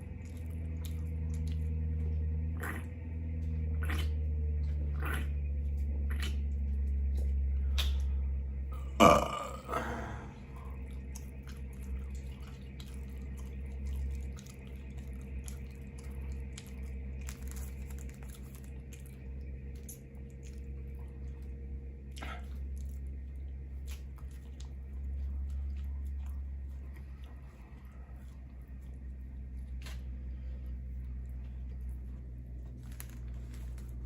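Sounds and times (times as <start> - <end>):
steady low hum: 0.0 - 34.0
person burping: 8.8 - 10.4
mouth sound: 8.8 - 10.8.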